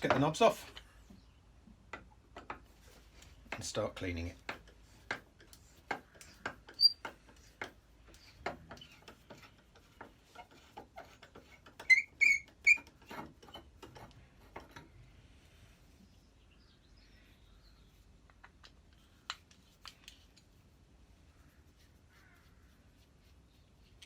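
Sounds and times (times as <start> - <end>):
short high squeaks: 6.7 - 7.1, 11.8 - 12.9.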